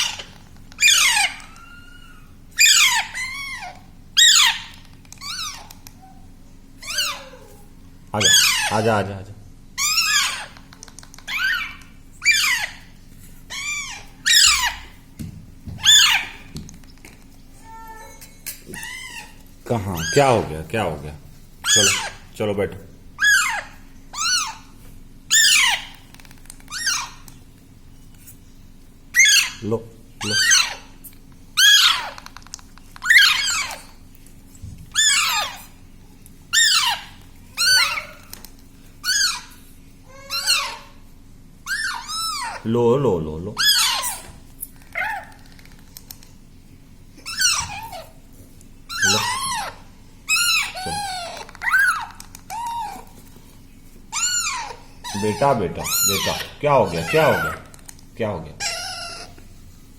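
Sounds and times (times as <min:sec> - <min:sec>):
parrot chick screeching: 0:00.0 - 0:07.6, 0:08.2 - 0:09.0, 0:09.8 - 0:12.9, 0:13.5 - 0:15.0, 0:15.7 - 0:16.6, 0:18.7 - 0:20.6, 0:21.6 - 0:22.3, 0:23.2 - 0:27.4, 0:29.1 - 0:34.0, 0:34.9 - 0:35.8, 0:36.5 - 0:38.4, 0:39.0 - 0:41.0, 0:41.6 - 0:42.7, 0:43.5 - 0:45.6, 0:47.2 - 0:48.2, 0:48.9 - 0:53.2, 0:54.1 - 0:57.8, 0:58.5 - 0:59.4.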